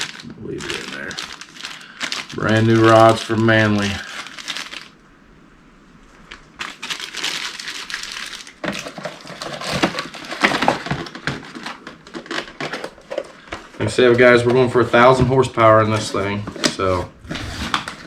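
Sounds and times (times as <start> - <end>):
packaging crinkling and rustling: 0.0 - 5.1, 6.0 - 18.0.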